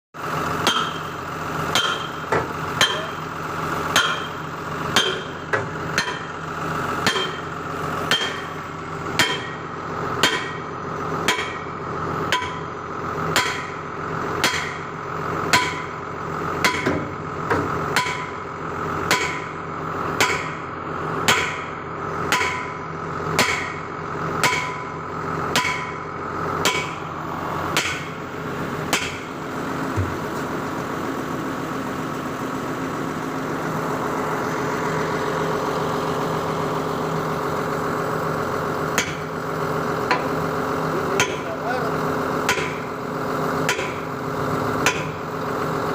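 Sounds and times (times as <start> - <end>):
engine running: 0.2 - 45.9
hammer striking metal: 0.6 - 1.1, 1.7 - 3.2, 3.9 - 6.3, 7.0 - 7.5, 8.1 - 8.6, 9.2 - 9.6, 10.2 - 11.7, 12.3 - 12.7, 13.3 - 13.8, 14.4 - 14.9, 15.5 - 15.9, 16.6 - 18.4, 19.1 - 19.6, 20.2 - 20.6, 21.3 - 21.7, 22.3 - 22.8, 23.4 - 23.8, 24.4 - 24.9, 25.5 - 26.0, 26.6 - 27.0, 27.7 - 28.1, 28.9 - 29.3, 39.0 - 39.3, 41.2 - 41.6, 42.4 - 42.9, 43.6 - 44.1, 44.8 - 45.2.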